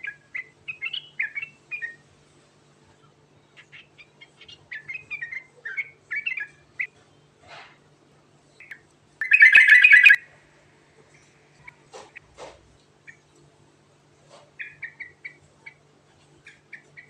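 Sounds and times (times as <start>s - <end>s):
bird rapid chattering: 9.2s - 10.2s
bird singing bubbly notes: 9.2s - 10.2s.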